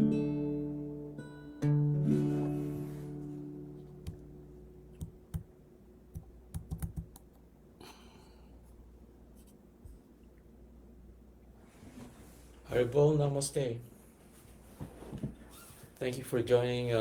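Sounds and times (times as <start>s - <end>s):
strummed acoustic guitar chord: 0.0s - 5.2s
soft rustle: 11.6s - 12.9s, 13.8s - 16.3s.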